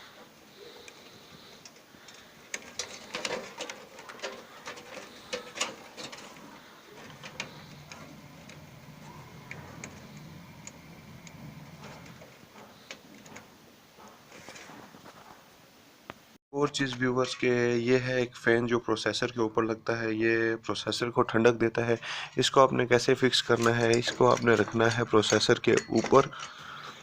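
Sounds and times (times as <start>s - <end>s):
faint low hum: 0.1s - 16.3s.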